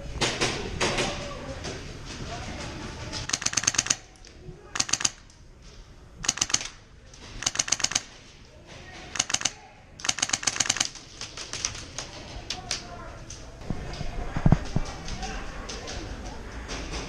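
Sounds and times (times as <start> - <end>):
airsoft guns firing bursts: 3.2 - 5.3, 6.2 - 8.4, 9.0 - 12.2.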